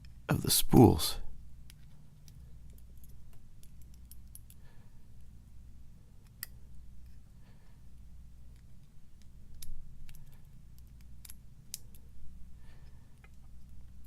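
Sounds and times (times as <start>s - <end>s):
low steady hum: 0.0s - 14.0s
small metal clicks: 1.7s - 4.6s, 8.5s - 12.1s.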